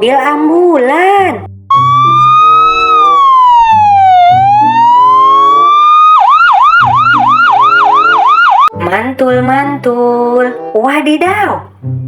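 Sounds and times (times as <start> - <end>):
toy siren wailing and yelping: 1.7 - 8.7.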